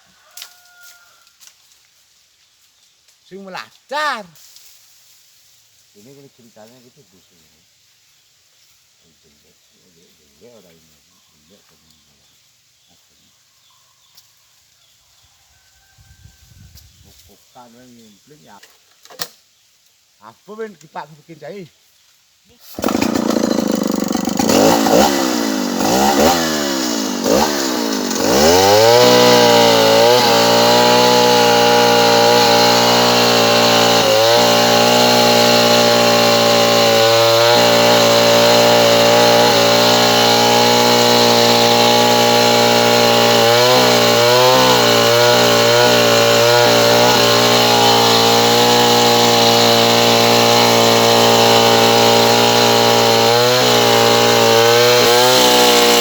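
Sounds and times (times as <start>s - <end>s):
chainsaw sawing wood: 22.6s - 56.0s
chainsaw engine revving: 22.7s - 56.0s.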